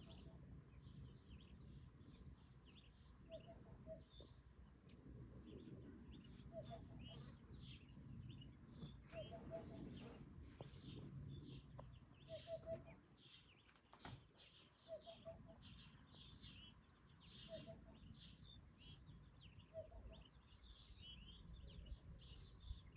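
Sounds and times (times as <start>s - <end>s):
birds twittering: 0.0s - 22.9s.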